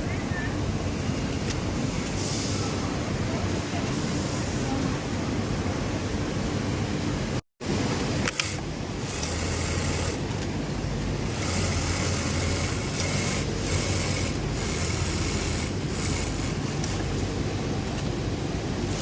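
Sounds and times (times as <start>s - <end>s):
low machinery hum: 7.1s - 19.0s
sewing machine running: 8.3s - 10.3s, 11.3s - 17.2s.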